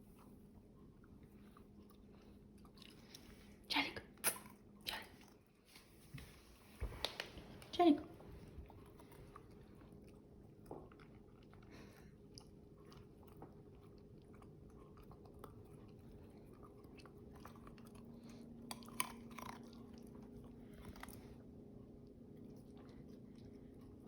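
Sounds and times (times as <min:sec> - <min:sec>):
dog chewing carrot crunches: 0:08.4 - 0:21.4.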